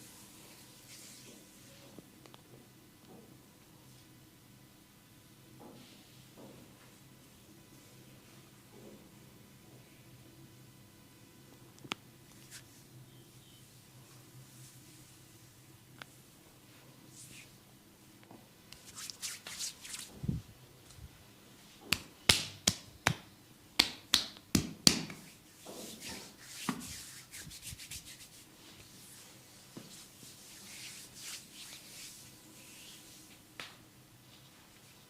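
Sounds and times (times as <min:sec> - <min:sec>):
hands rubbing on skin: 0:12.4 - 0:12.8, 0:18.8 - 0:20.2, 0:25.1 - 0:33.4.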